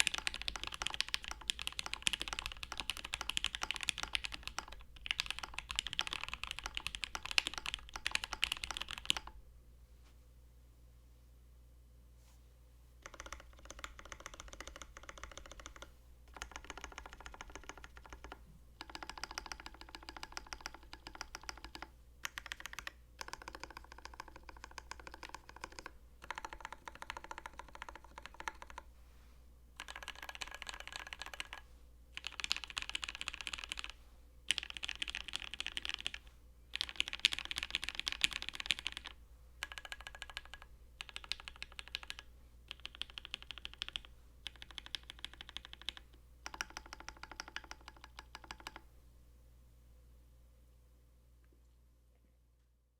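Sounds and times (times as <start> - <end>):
mechanical keyboard typing: 0.0 - 9.4, 13.0 - 28.9, 29.8 - 31.6, 32.2 - 48.8.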